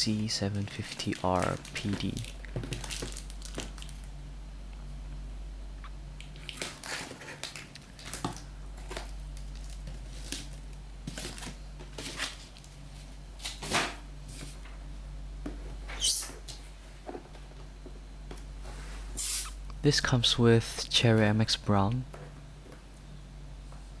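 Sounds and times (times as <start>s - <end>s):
steady low hum: 0.0s - 24.0s
cardboard and plastic rustling: 0.1s - 4.1s, 6.4s - 14.7s.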